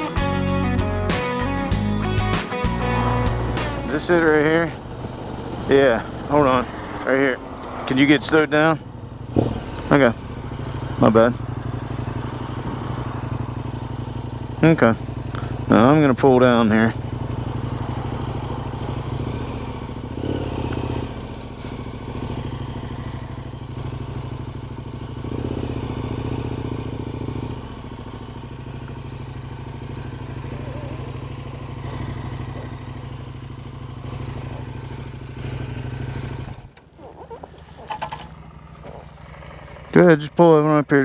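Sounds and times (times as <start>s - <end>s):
motorcycle engine running: 0.0s - 41.0s.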